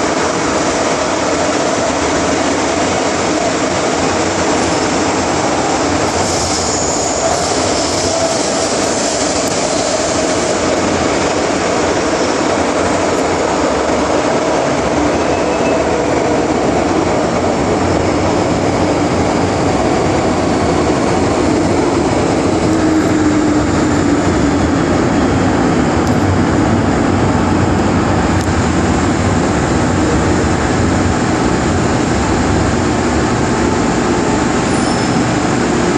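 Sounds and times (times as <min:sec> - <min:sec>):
faint train whine: 0:00.0 - 0:35.9
train wheels rumbling: 0:00.0 - 0:35.9.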